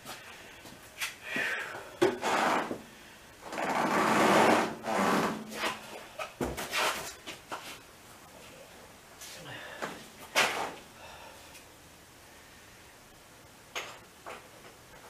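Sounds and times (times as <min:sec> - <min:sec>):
scraping and rubbing: 0:02.1 - 0:02.8, 0:03.5 - 0:05.9, 0:06.6 - 0:07.8.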